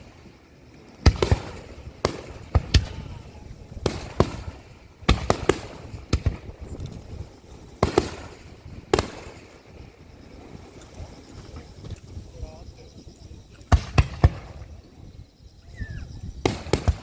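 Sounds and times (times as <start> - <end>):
firework shells bursting: 0.0 - 12.2, 13.6 - 15.3, 16.4 - 17.0.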